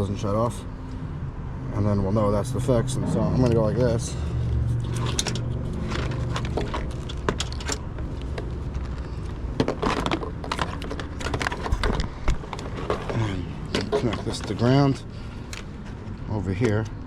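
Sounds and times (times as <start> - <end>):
steady low rumble: 0.0 - 9.6
metallic clicks and rattles: 4.8 - 8.4.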